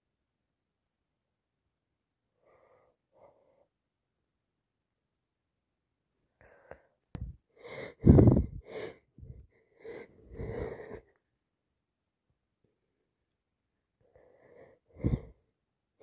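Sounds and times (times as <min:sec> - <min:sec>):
person gasping: 0:06.4 - 0:11.2, 0:14.2 - 0:15.4.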